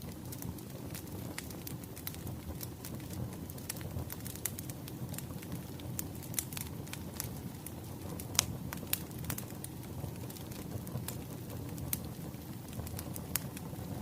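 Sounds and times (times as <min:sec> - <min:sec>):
wood fire crackling: 0:00.0 - 0:14.0.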